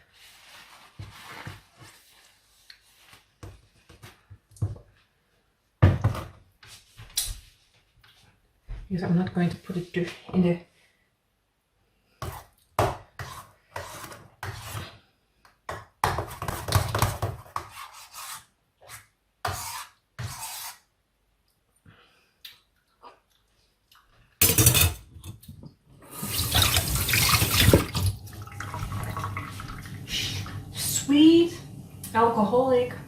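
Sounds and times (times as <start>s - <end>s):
tap water splashing into sink: 26.2s - 30.0s.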